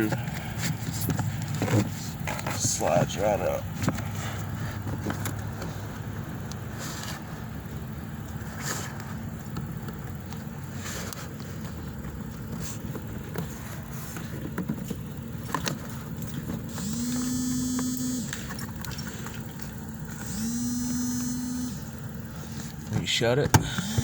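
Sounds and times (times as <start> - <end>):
mobile phone vibrating: 16.7 - 18.4, 20.1 - 22.1, 23.6 - 24.0.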